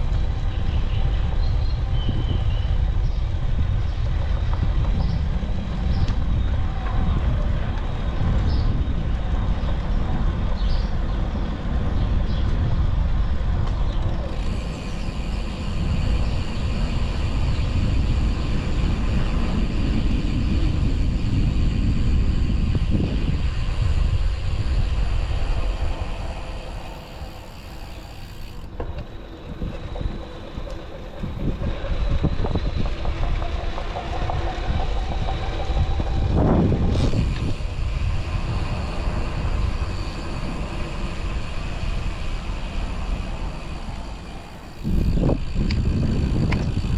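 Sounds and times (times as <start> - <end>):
wind and road noise: 0.0 - 46.9
motor drive rattling: 43.6 - 46.9.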